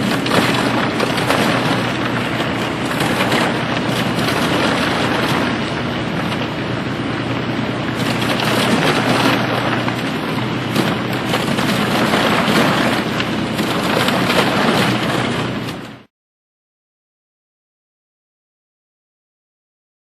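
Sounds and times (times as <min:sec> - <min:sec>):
ice crunching and crashing: 0:00.0 - 0:15.8
boat motor droning: 0:00.0 - 0:16.1.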